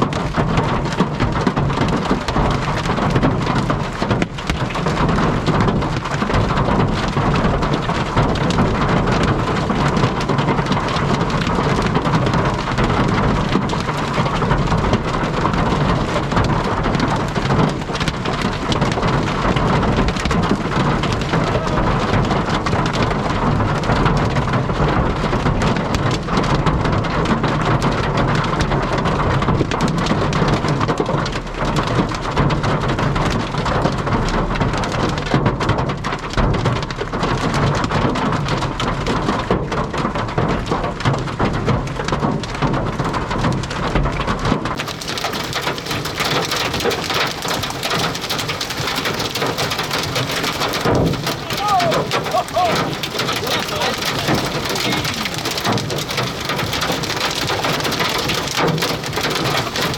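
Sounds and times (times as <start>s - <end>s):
rain and hail on vehicle roof: 0.0s - 59.9s
wind rumbling: 44.8s - 59.9s.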